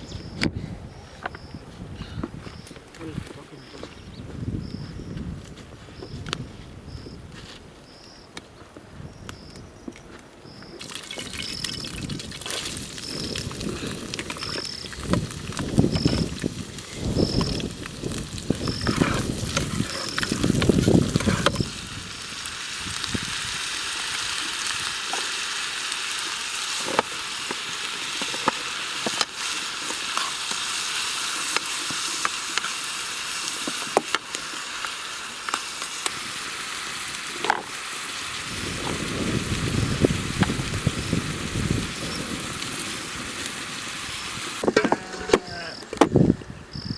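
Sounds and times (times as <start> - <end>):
food sizzling in a pan: 10.8 - 44.6.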